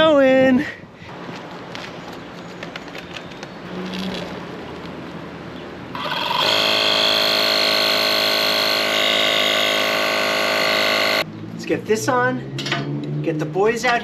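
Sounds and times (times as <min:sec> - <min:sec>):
small engine droning: 0:05.9 - 0:11.2.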